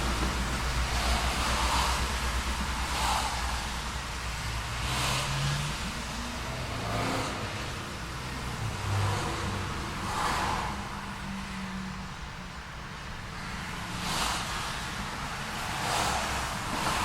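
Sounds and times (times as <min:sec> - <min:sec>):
cars passing: 0:00.0 - 0:17.0
low hum of engines: 0:00.0 - 0:17.0.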